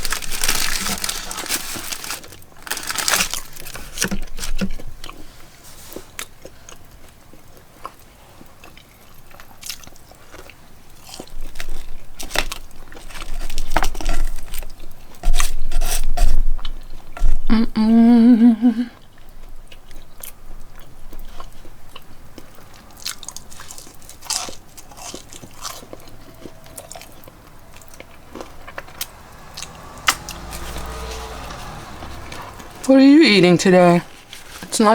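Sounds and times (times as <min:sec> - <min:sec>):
person chewing crunchy food: 0:19.1 - 0:29.6.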